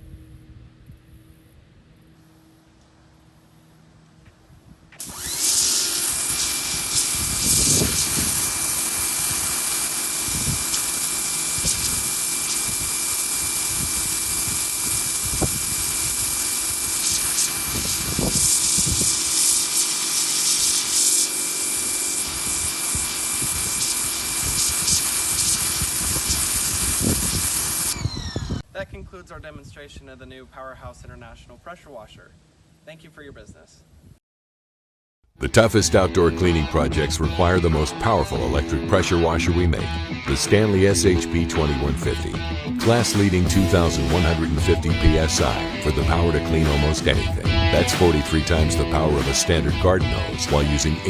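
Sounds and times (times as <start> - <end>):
water jet hissing: 5.0 - 28.0
pressure washer motor hum: 5.0 - 28.6, 35.9 - 51.0.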